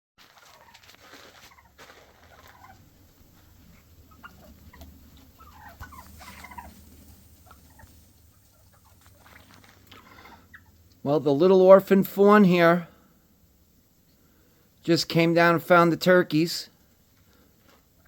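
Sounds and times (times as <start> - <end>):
wild turkeys calling: 0.4 - 11.1.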